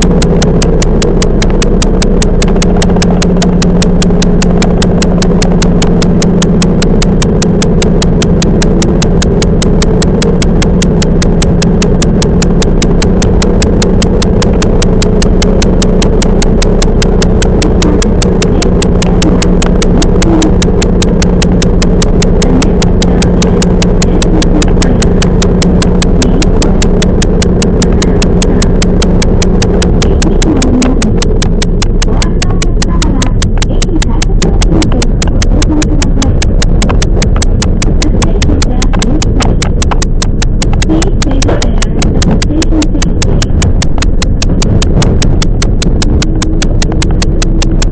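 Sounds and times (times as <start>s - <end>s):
rapid rhythmic ticking: 0.0s - 47.9s
train running hum: 0.0s - 47.9s.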